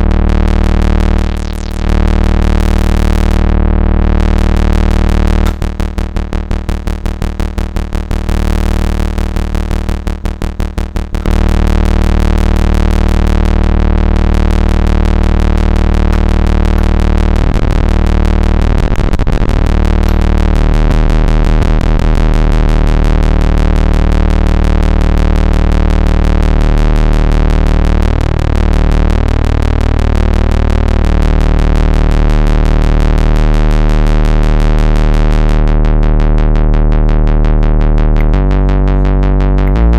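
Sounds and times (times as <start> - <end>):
buzzy synthesizer tone: 0.0 - 39.9
synthesizer sequenced pattern: 4.2 - 23.5, 35.2 - 39.9.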